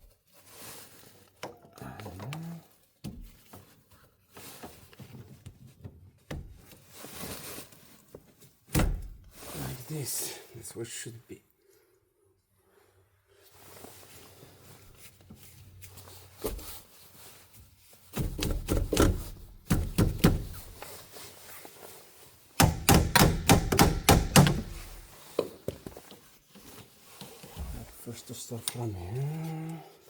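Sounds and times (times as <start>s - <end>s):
knocks and thumps on hard material: 18.1s - 20.8s, 22.6s - 25.1s.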